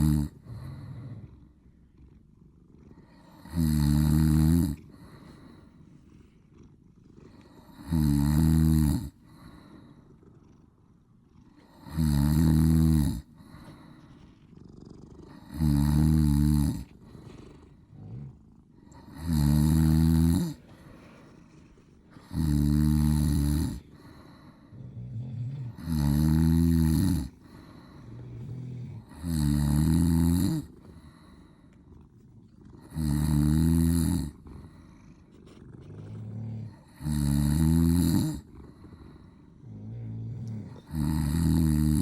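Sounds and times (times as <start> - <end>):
man snoring loudly: 0.0 - 1.3, 3.3 - 4.8, 7.6 - 9.2, 11.7 - 13.3, 15.3 - 16.9, 18.9 - 20.6, 22.2 - 31.2, 32.8 - 34.4, 36.3 - 38.5, 39.6 - 42.0
quiet breathing: 0.0 - 42.0.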